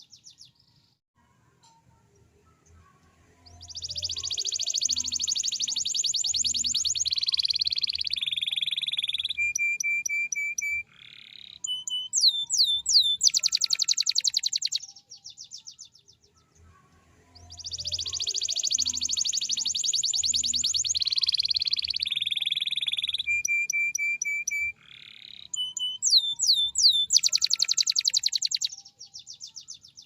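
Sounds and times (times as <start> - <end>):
canary singing trills: 2.2 - 30.0.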